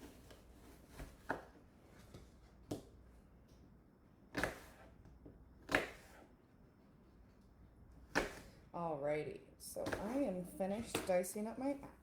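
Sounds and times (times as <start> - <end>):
knife chopping on cutting board: 4.3 - 4.9, 5.6 - 6.3, 8.0 - 8.5, 9.8 - 11.2.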